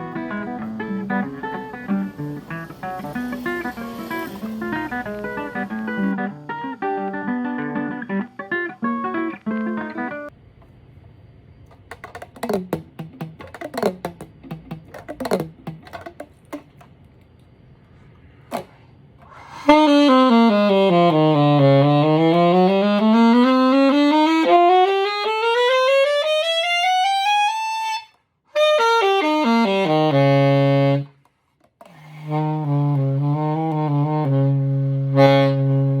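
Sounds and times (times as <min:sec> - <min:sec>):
alto saxophone playing: 0:00.0 - 0:07.9, 0:19.4 - 0:36.0
plucked guitar-like notes: 0:00.0 - 0:10.3, 0:12.0 - 0:16.6.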